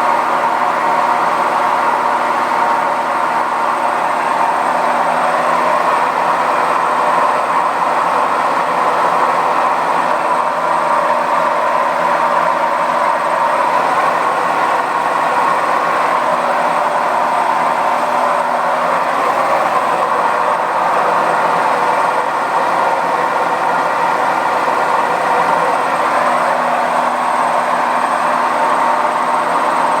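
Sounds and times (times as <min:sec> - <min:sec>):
washing machine running loudly: 0:00.0 - 0:30.0.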